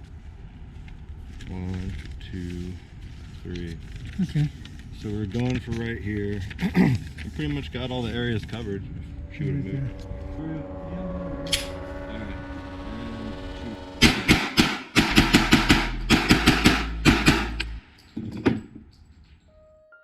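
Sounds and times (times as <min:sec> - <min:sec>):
rapid pistol fire: 0:14.0 - 0:17.6.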